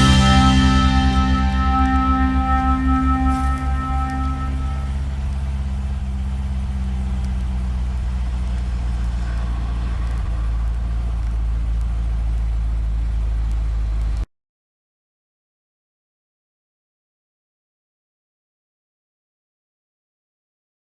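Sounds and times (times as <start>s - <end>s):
car engine idling: 0.0s - 14.2s.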